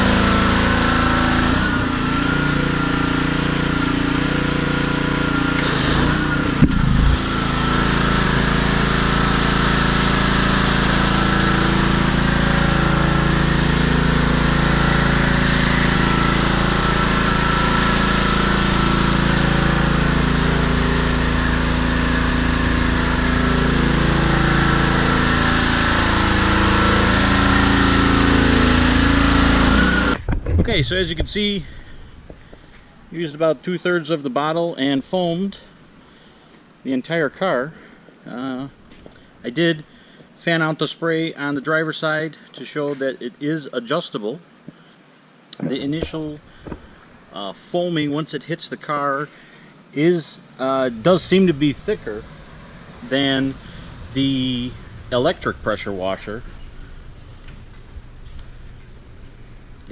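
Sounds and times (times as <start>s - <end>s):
pressure washer engine running: 0.0s - 30.2s, 45.8s - 47.2s, 50.6s - 59.9s
water and foam spraying: 0.0s - 30.2s, 50.6s - 59.9s.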